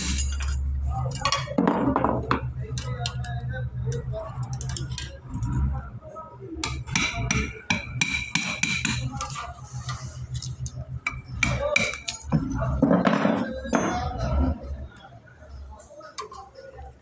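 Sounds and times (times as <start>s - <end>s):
metal-on-metal knocks: 6.6s - 9.5s.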